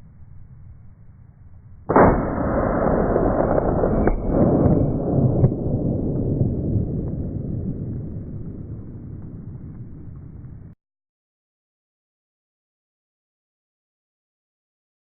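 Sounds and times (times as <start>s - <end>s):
shotgun boom with low rumble: 1.8s - 10.8s.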